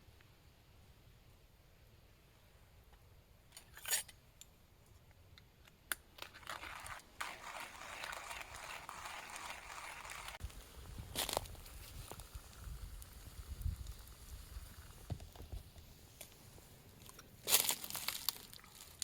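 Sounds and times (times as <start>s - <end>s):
crinkling and rustling: 6.1s - 12.7s, 15.0s - 19.0s.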